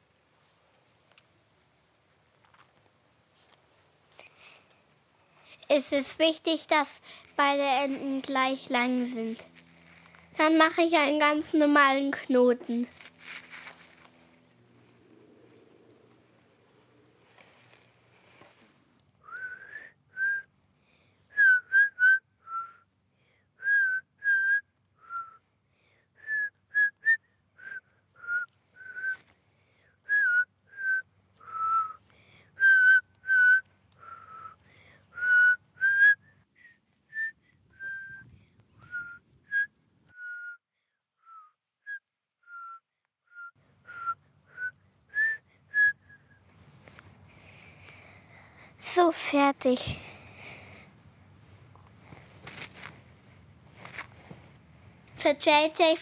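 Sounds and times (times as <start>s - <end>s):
person whistling a tune: 19.2s - 20.5s, 21.3s - 22.8s, 26.2s - 29.2s, 30.1s - 32.0s, 32.6s - 40.6s, 41.2s - 46.4s.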